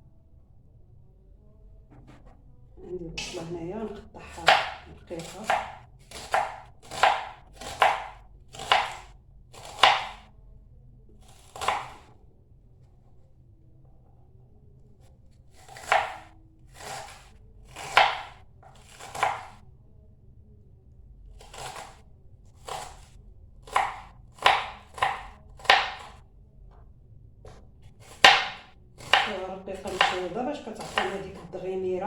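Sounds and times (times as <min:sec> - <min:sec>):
knife slicing onion: 0:03.2 - 0:10.2, 0:11.2 - 0:12.1, 0:15.5 - 0:19.6, 0:21.4 - 0:26.2, 0:27.8 - 0:31.5.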